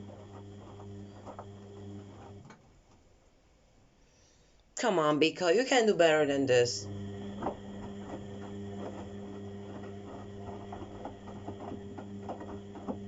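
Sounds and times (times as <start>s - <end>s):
washing machine motor hum: 0.0s - 2.6s, 5.9s - 13.0s.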